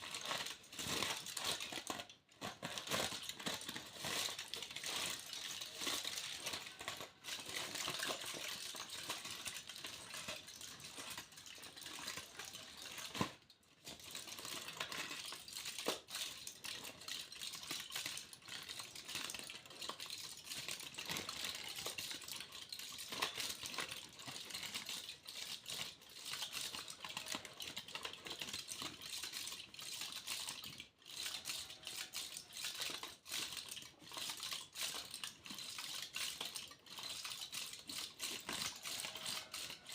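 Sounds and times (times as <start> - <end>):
foil crinkling: 0.0 - 17.1, 30.6 - 39.9.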